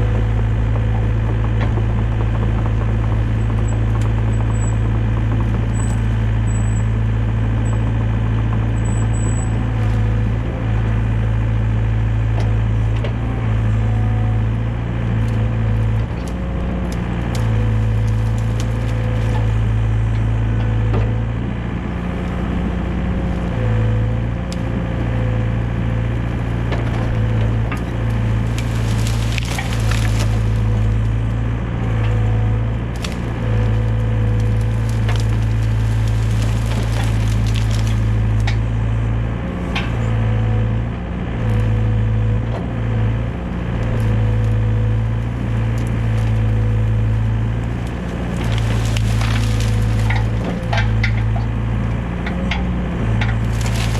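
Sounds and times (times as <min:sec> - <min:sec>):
excavator diesel engine running: 0:00.0 - 0:53.9
branches cracking and snapping: 0:12.2 - 0:21.2, 0:22.1 - 0:39.0, 0:43.7 - 0:53.9.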